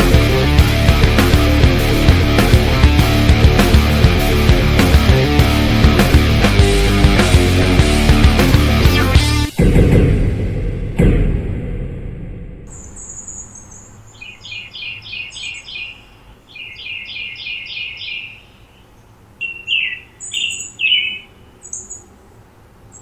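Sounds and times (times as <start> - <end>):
birdsong trills and chirps: 12.7 - 22.2.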